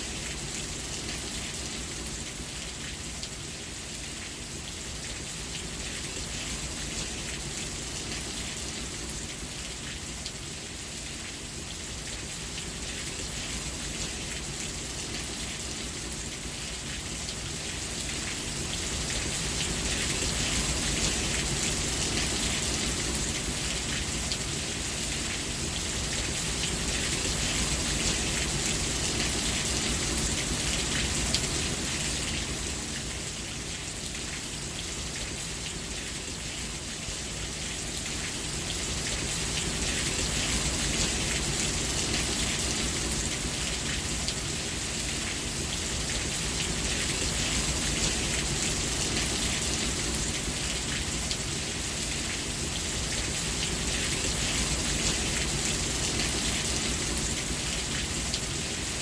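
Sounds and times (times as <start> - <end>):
steady rainfall: 0.0 - 59.0.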